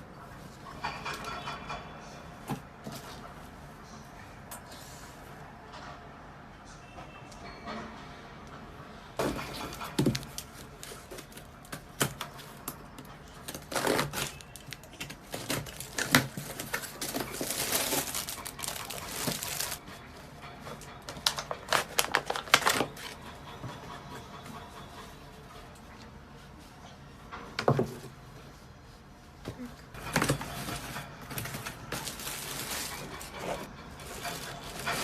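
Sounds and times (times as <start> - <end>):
packaging crinkling and tearing: 13.5 - 19.8, 21.2 - 23.0.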